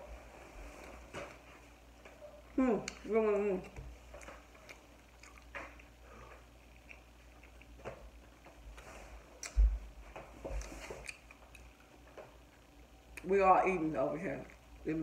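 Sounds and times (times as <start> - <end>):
chewing with wet mouth smacks: 4.2 - 8.6, 10.6 - 13.3.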